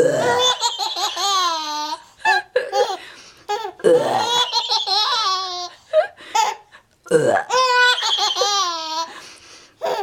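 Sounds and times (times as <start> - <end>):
baby laughing: 0.2 - 5.8, 6.4 - 6.7, 7.5 - 9.2, 9.8 - 10.0.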